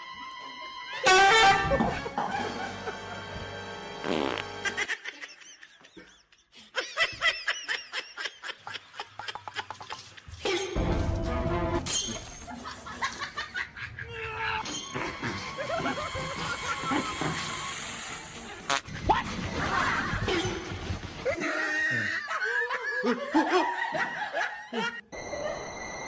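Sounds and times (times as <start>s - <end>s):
laughter in short bursts: 14.9s - 17.7s.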